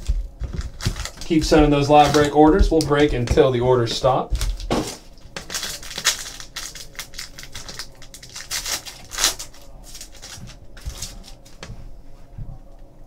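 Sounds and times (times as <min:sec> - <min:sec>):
packaging tearing and crinkling: 0:00.2 - 0:02.5, 0:04.4 - 0:11.6.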